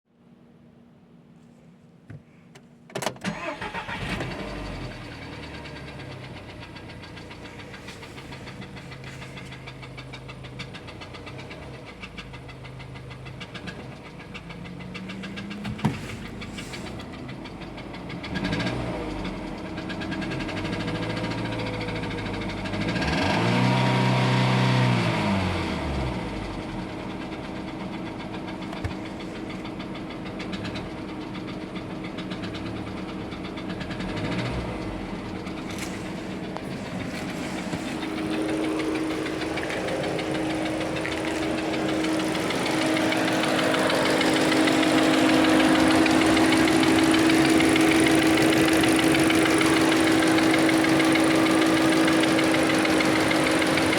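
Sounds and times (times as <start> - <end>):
car engine starting and idling: 2.6 - 53.9
car engine revving: 13.3 - 26.8, 33.8 - 53.9.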